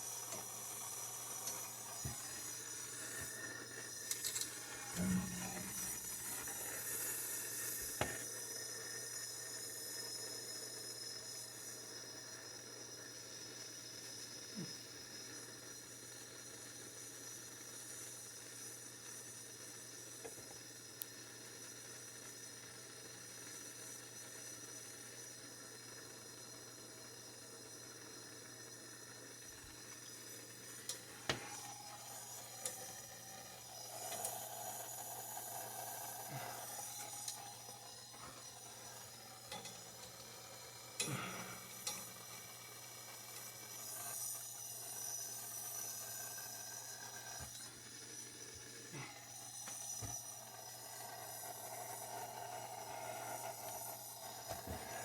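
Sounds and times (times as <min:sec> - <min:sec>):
torch hissing and sizzling: 0:00.0 - 0:12.3, 0:29.4 - 0:55.0.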